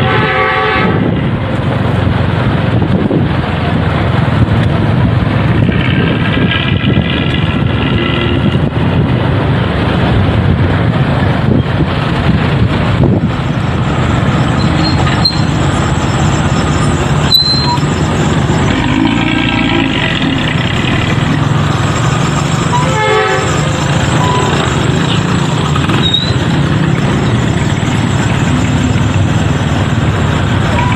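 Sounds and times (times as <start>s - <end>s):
bus engine growling exhaust: 0.0s - 30.9s
higher pitched sound: 14.3s - 22.9s.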